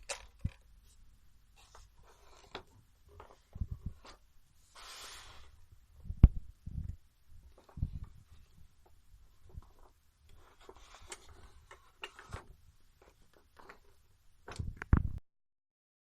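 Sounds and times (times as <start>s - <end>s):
small clicks and rustling: 7.5s - 15.1s.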